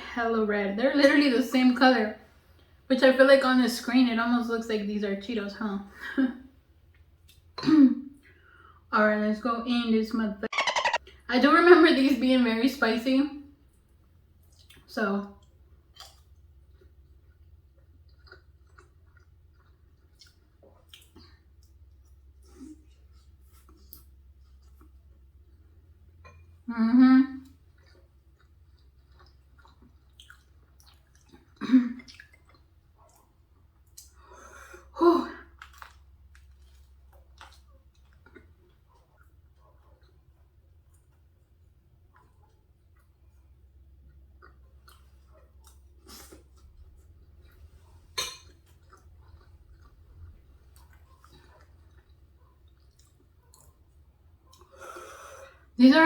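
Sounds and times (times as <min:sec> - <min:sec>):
chewing soft pasta: 0:06.5 - 0:07.6, 0:13.4 - 0:26.7, 0:27.3 - 0:55.8
wet mouth clicks: 0:10.6 - 0:11.0.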